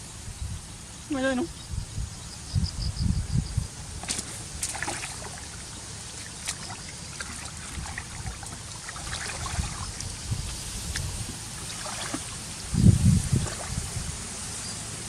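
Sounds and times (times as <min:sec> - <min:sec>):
water trickling and splashing: 0:03.9 - 0:15.0.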